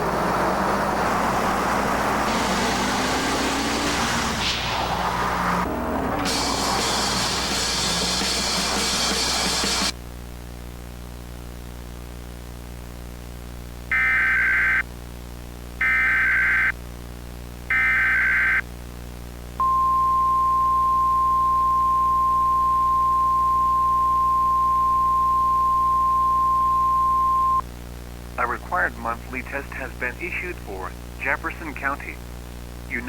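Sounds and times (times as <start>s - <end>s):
low electrical hum: 14.8s - 33.0s
steady high attention tone: 19.6s - 27.6s.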